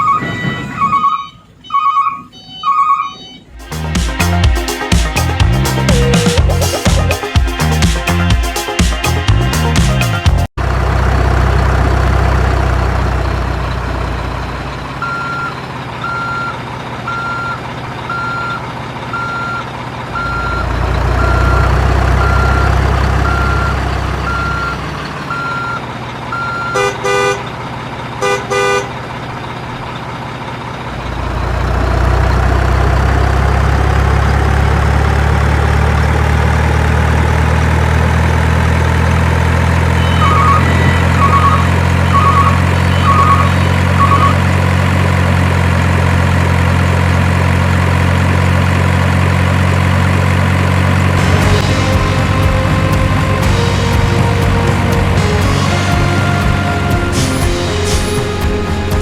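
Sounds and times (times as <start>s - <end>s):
reversing beep: 0.0s - 3.6s, 14.0s - 26.9s, 39.6s - 44.7s
horn toots: 0.0s - 10.5s, 26.6s - 27.5s, 28.2s - 29.0s, 39.7s - 44.6s, 51.1s - 59.0s
truck engine rumbling: 3.2s - 59.0s.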